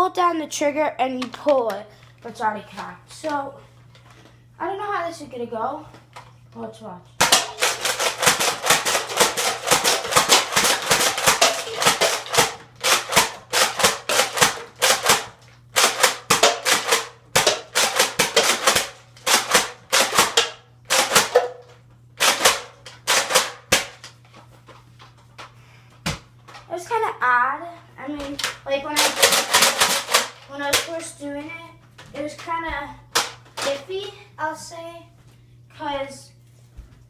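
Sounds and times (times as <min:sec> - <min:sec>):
toy blaster pump clacks and shots: 0:07.2 - 0:24.2, 0:28.2 - 0:30.9, 0:33.1 - 0:33.9.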